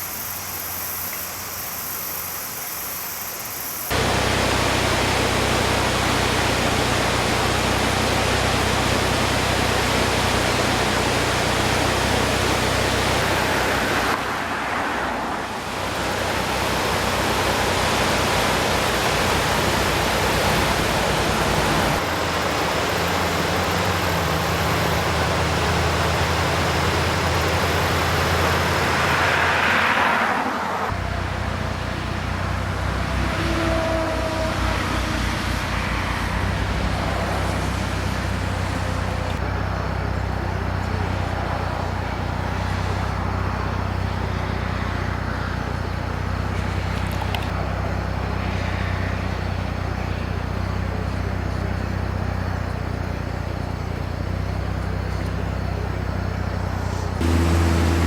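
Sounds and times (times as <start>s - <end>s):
loud hiss of water: 0.0s - 14.5s, 15.4s - 31.0s, 56.8s - 58.0s
low engine hum: 3.9s - 58.0s.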